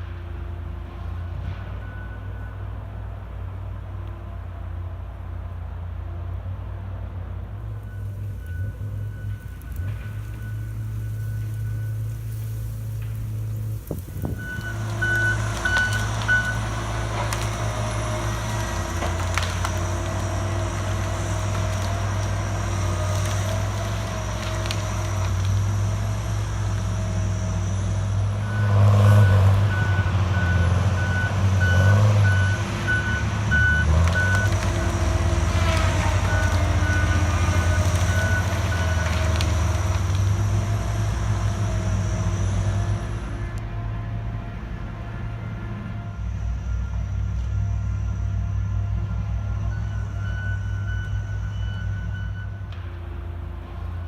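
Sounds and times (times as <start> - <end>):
diesel engine running: 0.0 - 54.0
reversing alarm beeping: 7.8 - 12.5, 14.3 - 18.4, 27.0 - 35.0, 36.2 - 39.6, 46.2 - 52.8.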